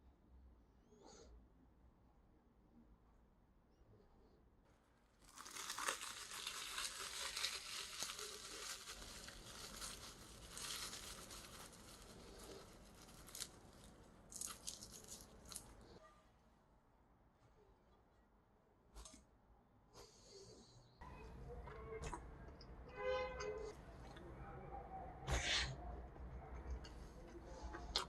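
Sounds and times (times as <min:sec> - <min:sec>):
crinkling and tearing: 0:05.0 - 0:16.0.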